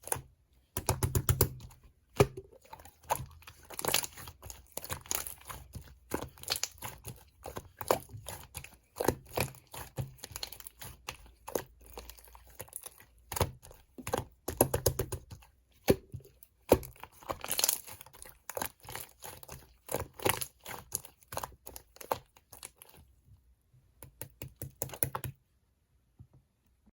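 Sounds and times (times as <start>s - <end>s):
slime crackling and popping: 3.4s - 12.0s, 16.6s - 22.8s.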